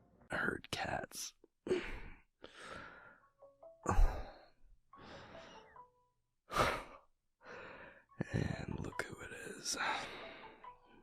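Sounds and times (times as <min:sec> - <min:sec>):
person sighing breathily: 0:01.6 - 0:03.1, 0:03.8 - 0:05.4.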